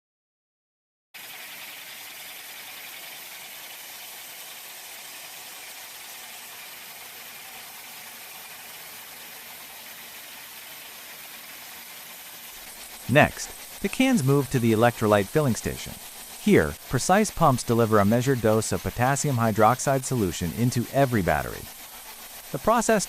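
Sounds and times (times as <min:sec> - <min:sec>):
machine hum: 0:04.6 - 0:23.0.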